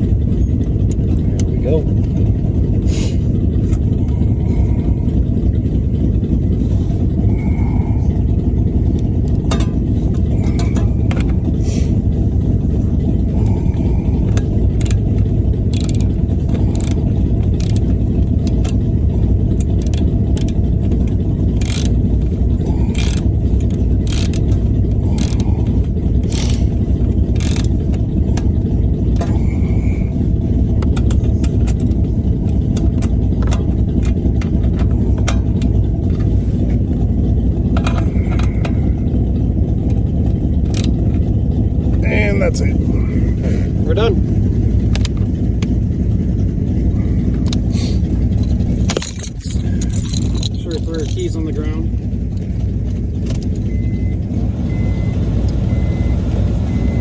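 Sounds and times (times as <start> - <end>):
car engine idling: 0.0 - 57.0
hand tool clicking: 14.2 - 15.0, 15.7 - 18.8, 19.6 - 22.0, 22.9 - 24.6, 25.2 - 25.4, 26.2 - 26.7, 27.4 - 27.8, 40.7 - 41.0, 48.4 - 51.3.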